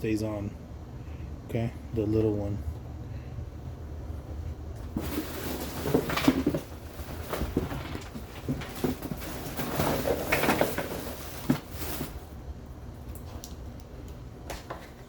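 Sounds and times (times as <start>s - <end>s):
plastic parts clicking and rustling: 4.9s - 12.2s.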